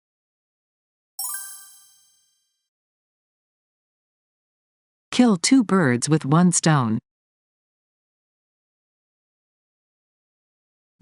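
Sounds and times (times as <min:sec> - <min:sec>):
faint chime ringing: 0:01.2 - 0:02.5.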